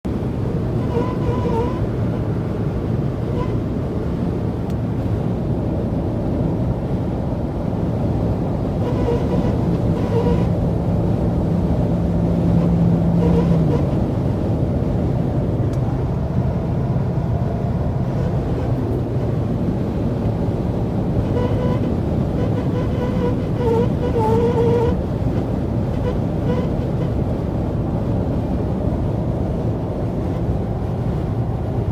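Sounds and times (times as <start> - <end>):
road and wind noise: 0.0 - 31.9
door seal reed-like buzz: 0.8 - 1.9, 8.8 - 10.5, 12.6 - 14.1, 21.2 - 27.2.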